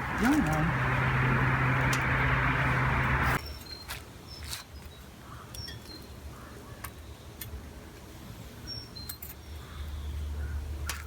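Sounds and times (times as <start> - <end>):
low rumble: 0.0 - 3.4.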